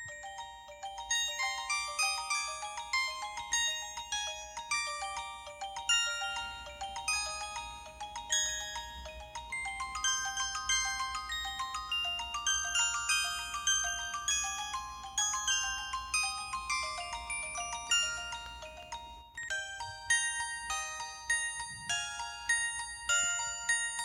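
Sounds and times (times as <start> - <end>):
mobile phone ringtone melody: 0.0 - 24.0.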